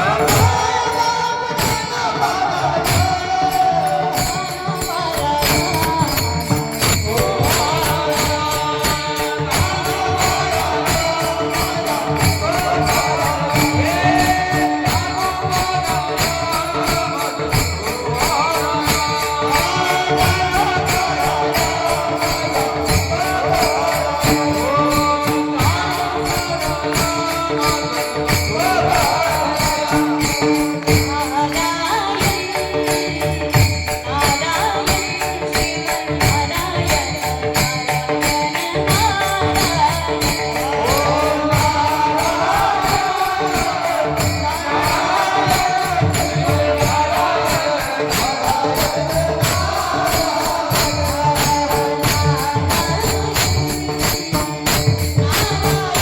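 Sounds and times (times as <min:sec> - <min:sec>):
jingling hand percussion: 0:00.0 - 0:56.0.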